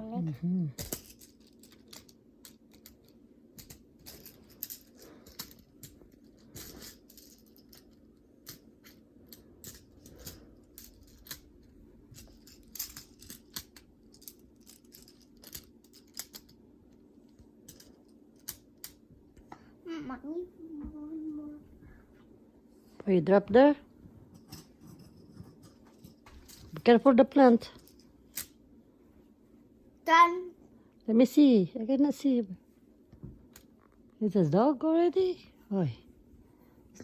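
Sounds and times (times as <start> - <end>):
faint steady hum: 0.0 - 37.0
magnetic toy pieces clicking: 0.8 - 11.6, 12.2 - 16.6, 17.7 - 19.0.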